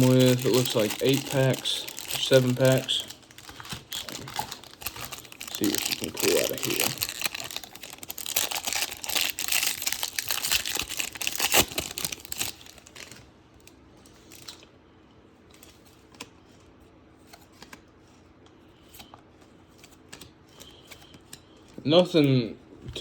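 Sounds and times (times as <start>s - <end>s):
plastic wrapper tearing and crinkling: 0.0s - 13.2s, 14.2s - 14.6s.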